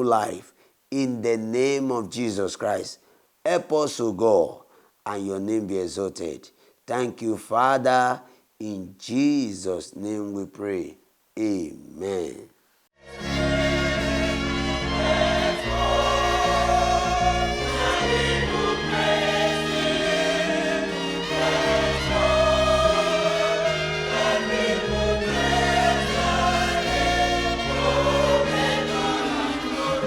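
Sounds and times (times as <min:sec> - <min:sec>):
gospel choir singing: 0:13.0 - 0:30.0
held bass line: 0:13.1 - 0:30.0.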